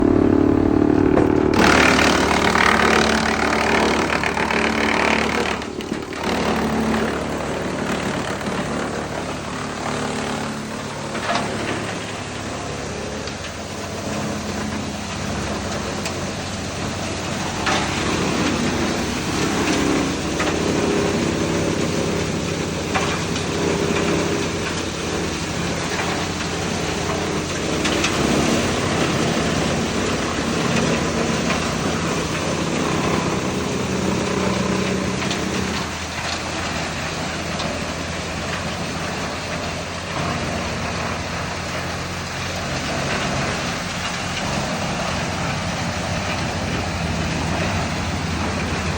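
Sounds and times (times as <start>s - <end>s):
machine engine running: 0.0s - 48.9s
sharp knocks: 0.7s - 10.2s.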